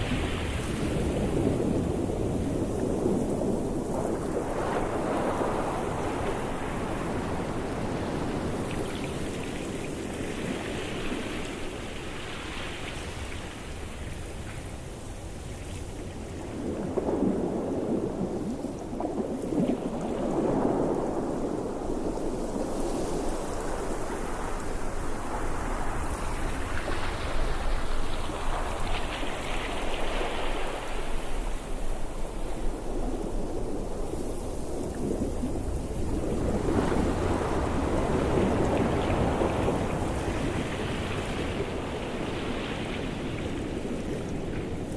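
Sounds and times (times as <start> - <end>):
ocean waves breaking on shore: 0.0 - 44.9.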